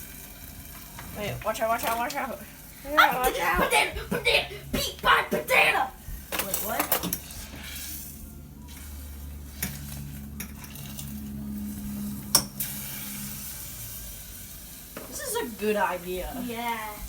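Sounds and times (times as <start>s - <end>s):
food sizzling in hot oil: 0.0s - 17.0s
metal utensil clinking on pot: 6.3s - 7.3s.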